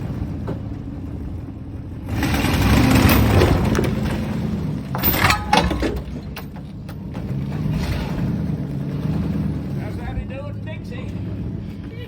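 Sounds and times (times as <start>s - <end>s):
engine running: 0.0s - 12.0s
sharp metallic clanks: 4.9s - 8.2s.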